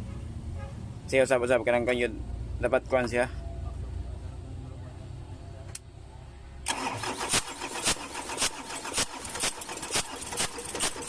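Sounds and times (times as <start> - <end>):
diesel engine starting and knocking: 6.6 - 11.0.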